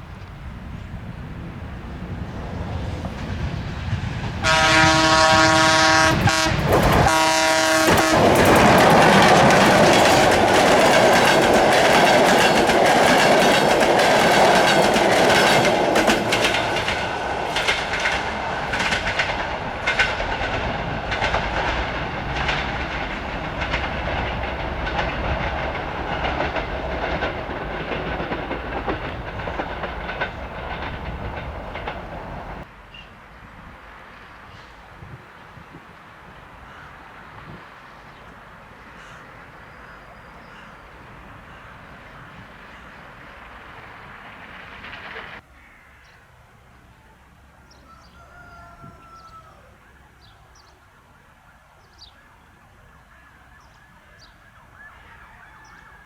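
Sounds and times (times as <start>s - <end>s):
locomotive running noise: 0.0s - 32.7s
clickety-clack of train wheels: 0.1s - 32.7s, 40.5s - 45.4s
locomotive horn: 4.4s - 9.7s.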